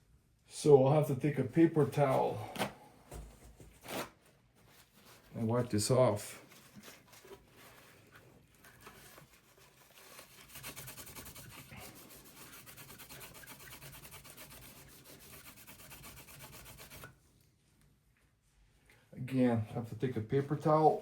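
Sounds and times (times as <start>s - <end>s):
paper towel rubbing metal surface: 8.9s - 17.2s.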